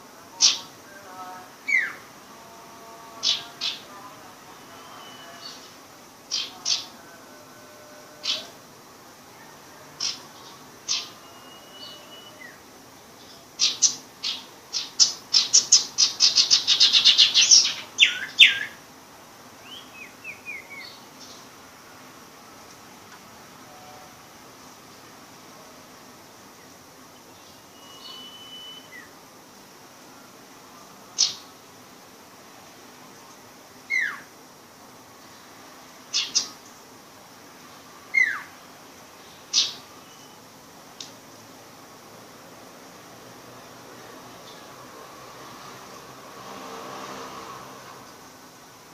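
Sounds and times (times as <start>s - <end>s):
bird chirping calls: 0.3s - 0.7s, 4.7s - 7.2s, 8.0s - 8.6s, 10.0s - 12.6s, 13.2s - 18.8s, 19.6s - 21.5s, 27.2s - 29.1s, 31.1s - 31.5s, 33.9s - 34.3s, 36.1s - 36.6s, 38.1s - 38.6s, 39.2s - 40.5s
bird singing high notes and trill: 4.7s - 8.6s, 10.0s - 12.6s, 27.2s - 29.1s, 39.3s - 40.5s
soft bird chirps: 10.0s - 12.6s, 27.2s - 29.1s, 39.3s - 40.5s.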